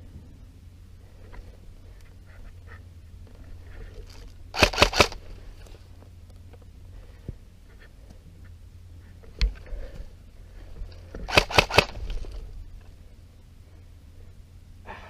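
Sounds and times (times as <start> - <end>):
airsoft gun shots: 4.6 - 5.2, 11.3 - 12.1.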